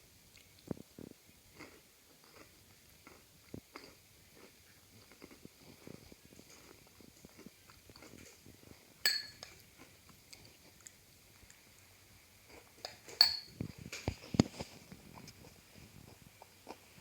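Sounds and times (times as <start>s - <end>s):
hard objects clinking: 9.1s - 9.4s, 12.9s - 13.6s.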